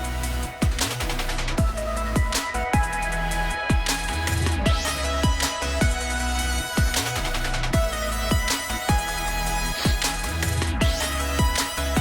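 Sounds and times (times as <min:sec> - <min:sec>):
electronic music: 0:00.0 - 0:12.0
sustained bass: 0:00.0 - 0:12.0
thumping kick drum: 0:00.6 - 0:00.9, 0:01.6 - 0:03.0, 0:03.6 - 0:06.1, 0:06.8 - 0:07.0, 0:07.7 - 0:09.2, 0:09.8 - 0:12.0.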